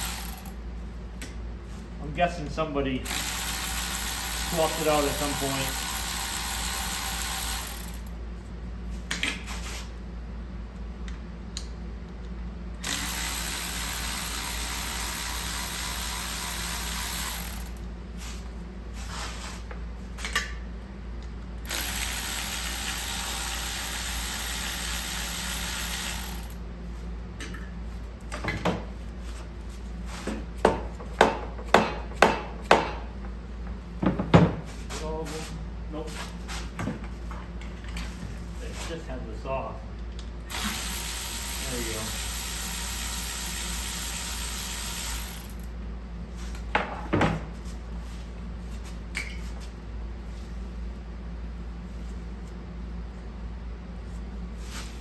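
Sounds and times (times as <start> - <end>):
handheld power tool running: 0.0 - 0.5, 3.1 - 8.1, 12.8 - 17.8, 21.6 - 26.6, 40.5 - 45.7
sharp knocks: 30.6 - 33.1.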